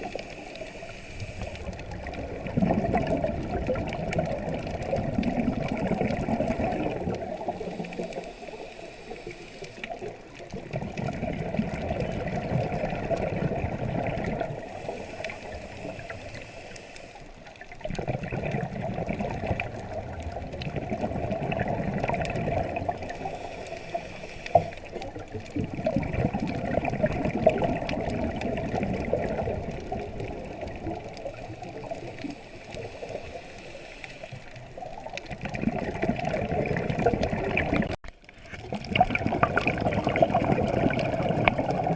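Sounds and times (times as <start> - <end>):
diver inhaling: 0.0 - 1.9, 7.3 - 10.1, 14.6 - 17.4, 23.0 - 25.0, 32.1 - 34.6
underwater regulator bubbling: 0.0 - 41.9.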